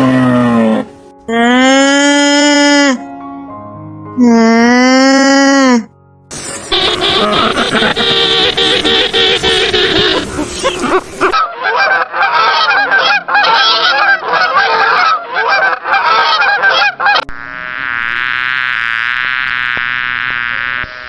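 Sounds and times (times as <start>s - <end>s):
steady buzzing tone: 6.3s - 11.4s, 17.2s - 21.0s
waterfowl honking: 6.7s - 19.8s.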